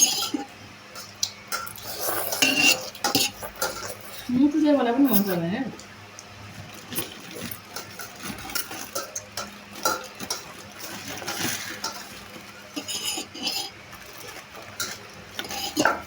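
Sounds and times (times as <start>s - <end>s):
cutlery clinking on dish: 1.0s - 4.2s, 7.7s - 12.2s, 12.8s - 16.0s.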